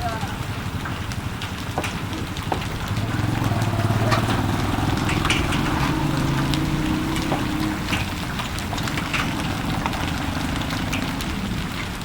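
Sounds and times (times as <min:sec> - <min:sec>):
heavy rain falling: 0:00.0 - 0:12.0
raindrops ticking close by: 0:00.0 - 0:12.0
low motor hum: 0:02.3 - 0:11.9.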